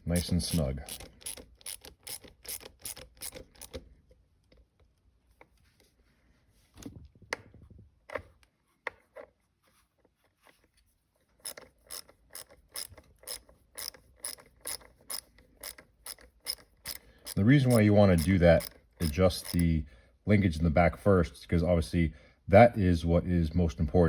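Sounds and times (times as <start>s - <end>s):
hand ratchet clicking: 0.0s - 3.8s, 11.4s - 19.7s.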